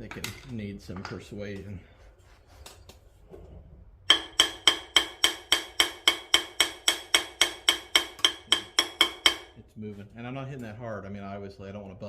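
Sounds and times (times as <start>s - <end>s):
hammer tapping on metal: 4.1s - 9.6s.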